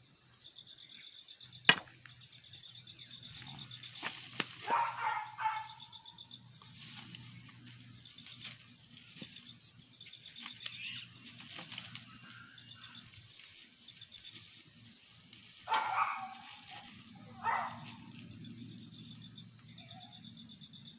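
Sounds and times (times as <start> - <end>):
jackal yelping: 4.6 - 6.2, 15.7 - 18.2.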